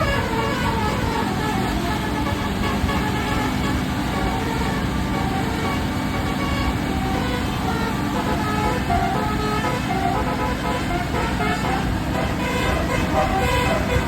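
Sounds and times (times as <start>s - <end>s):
bus engine running: 0.0s - 14.0s
bus horn tooting a tune: 0.0s - 14.0s.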